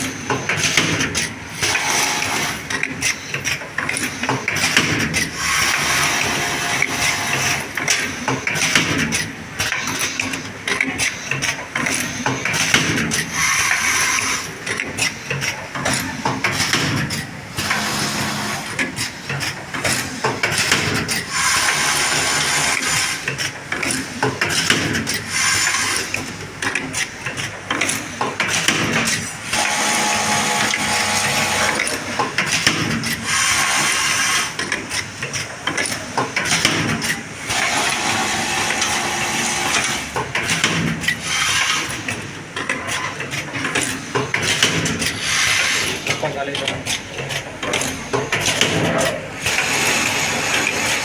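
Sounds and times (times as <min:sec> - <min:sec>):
electric sewing machine running: 0:05.4 - 0:07.6, 0:21.3 - 0:23.2, 0:29.5 - 0:32.0, 0:37.4 - 0:40.1, 0:49.4 - 0:51.0.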